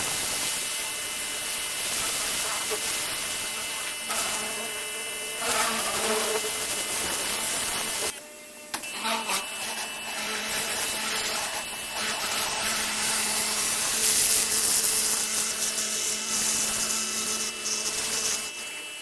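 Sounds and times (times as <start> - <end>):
pressure washer spraying: 0.0 - 8.1, 10.4 - 18.6.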